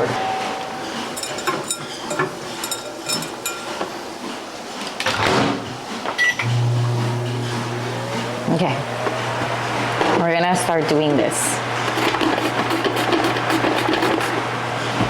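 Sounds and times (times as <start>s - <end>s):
microwave oven humming: 0.0s - 15.0s
microwave keypad beep: 6.2s - 6.5s.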